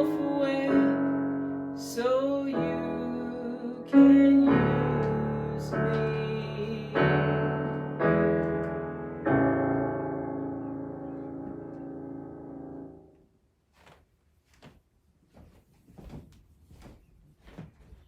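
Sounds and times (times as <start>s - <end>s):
piano playing slow chords: 0.0s - 13.2s.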